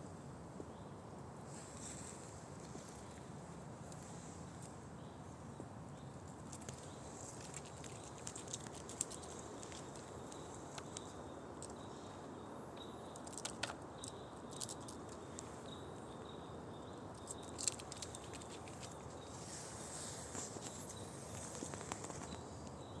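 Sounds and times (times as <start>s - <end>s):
faint outdoor hiss: 0.0s - 23.0s
squirrel clicking and tapping: 6.2s - 19.3s, 20.3s - 22.9s.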